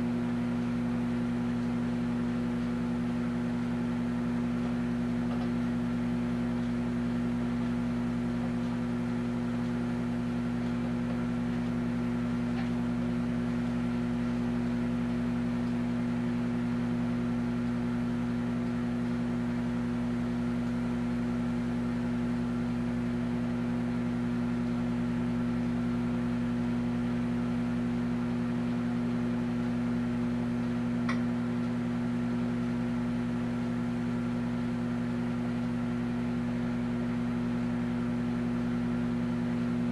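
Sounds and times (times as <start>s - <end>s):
microwave oven humming: 0.0s - 39.9s.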